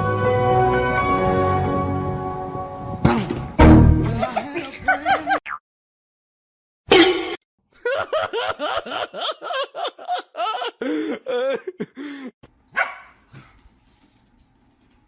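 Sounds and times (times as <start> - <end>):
person laughing: 4.0 - 5.4, 7.8 - 12.4.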